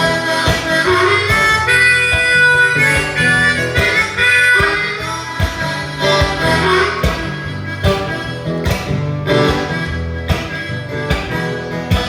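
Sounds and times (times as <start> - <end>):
bass line: 0.0 - 12.0
plucked guitar: 0.0 - 12.0
steady beat: 0.0 - 12.0.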